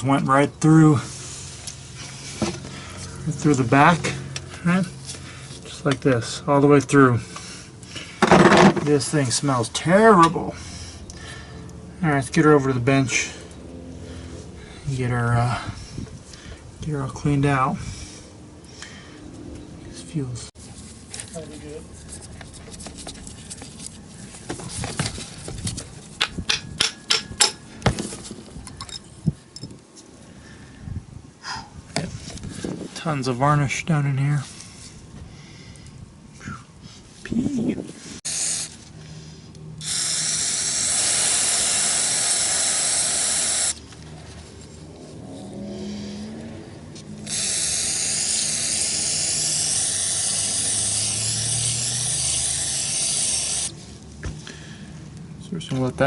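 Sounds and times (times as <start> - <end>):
aerosol can spraying hiss: 38.2 - 38.8, 39.8 - 43.8, 47.2 - 53.7.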